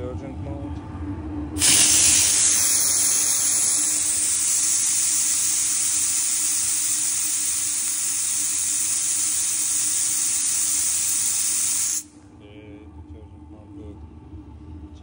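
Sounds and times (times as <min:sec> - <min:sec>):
machine low hum: 0:00.0 - 0:15.0
steam spray hissing: 0:01.6 - 0:12.1.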